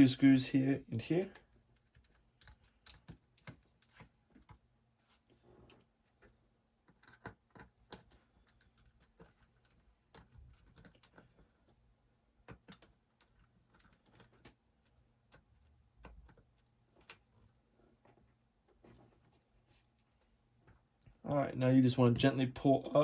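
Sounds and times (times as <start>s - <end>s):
thin squeak: 8.3s - 11.2s.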